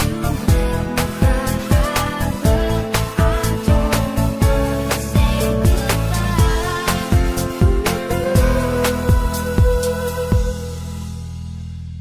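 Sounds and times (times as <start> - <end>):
low drum hits: 2.5 - 10.7.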